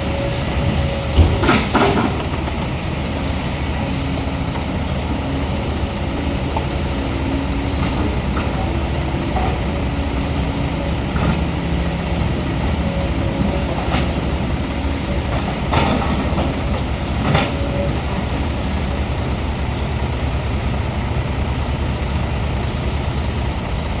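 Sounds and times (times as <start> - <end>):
diesel machinery running: 0.0 - 24.0
metallic clanks and knocks: 1.1 - 2.6.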